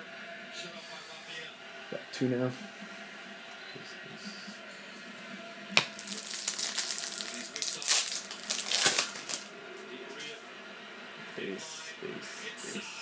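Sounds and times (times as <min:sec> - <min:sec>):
plastic wrapper tearing and crinkling: 0:05.8 - 0:09.5.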